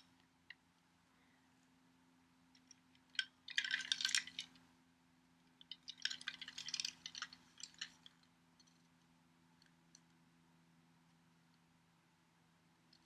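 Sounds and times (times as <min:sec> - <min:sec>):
toy train parts clinking: 0:03.1 - 0:04.6, 0:05.7 - 0:08.8.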